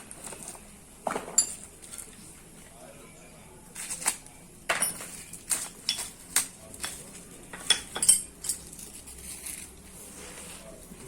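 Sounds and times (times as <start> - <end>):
metal tools clinking: 1.3 - 2.2, 4.7 - 9.7.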